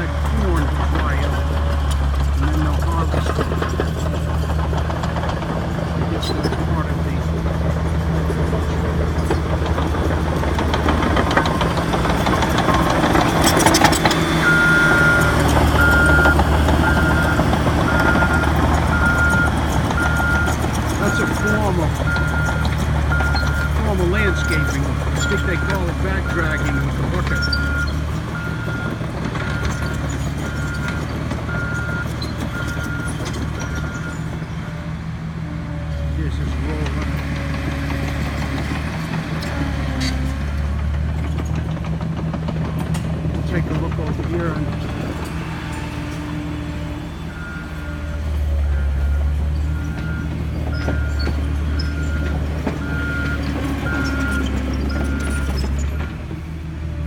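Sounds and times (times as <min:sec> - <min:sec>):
low engine running: 0:00.0 - 0:57.0
back-up alarm beeping: 0:13.8 - 0:33.9.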